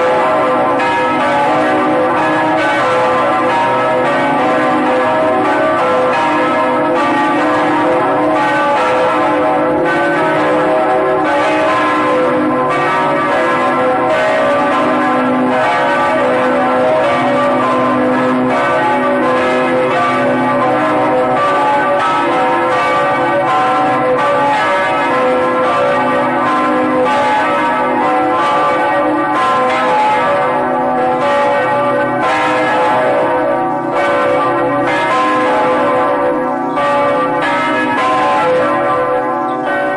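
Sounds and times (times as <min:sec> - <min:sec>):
bells ringing in a peal: 0:00.0 - 0:39.9.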